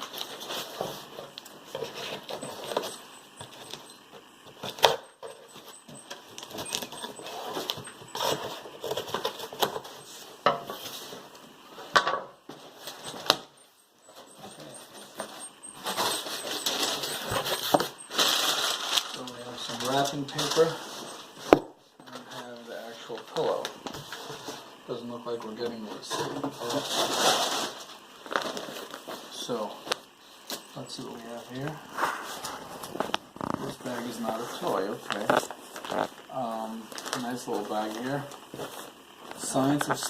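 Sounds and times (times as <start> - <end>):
paper rustling: 18.2 - 21.0.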